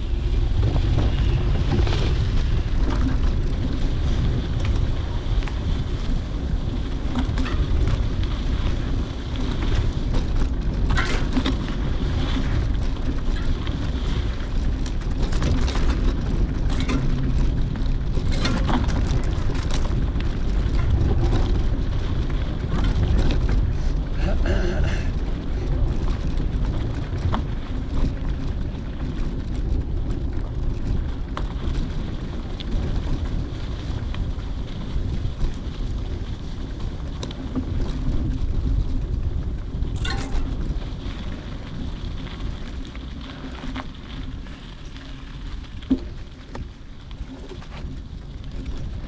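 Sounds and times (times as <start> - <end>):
low rumble: 0.0 - 31.7, 46.7 - 49.0
wind buffeting microphone: 0.0 - 49.0.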